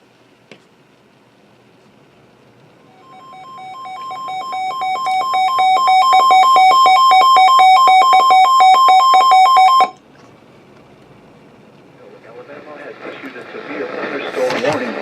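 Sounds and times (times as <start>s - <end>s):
two-tone electronic alarm beeping: 2.9s - 10.0s.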